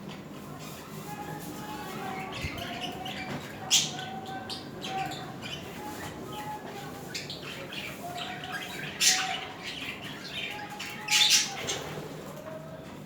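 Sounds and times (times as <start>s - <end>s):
budgerigars chattering and warbling: 2.2s - 12.0s.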